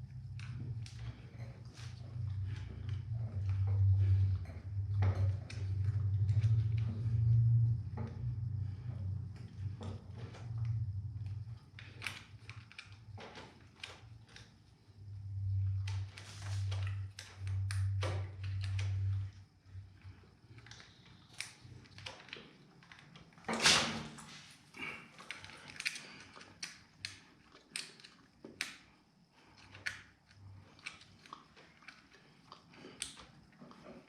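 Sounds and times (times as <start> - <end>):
low hum: 0.0 - 21.9
small clicks and scrapes: 0.3 - 14.9, 15.6 - 23.6, 25.2 - 34.0.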